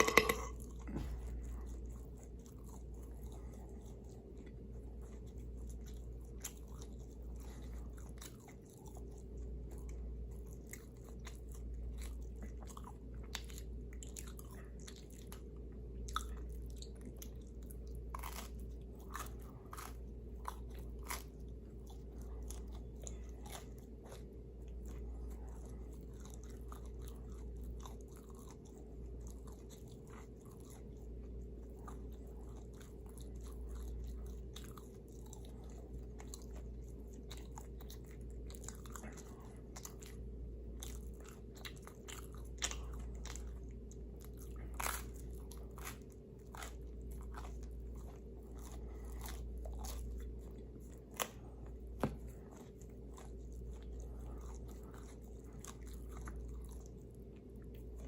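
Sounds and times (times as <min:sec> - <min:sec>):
crunchy chewing: 0:00.0 - 0:58.0
steady low hum: 0:00.0 - 0:58.0.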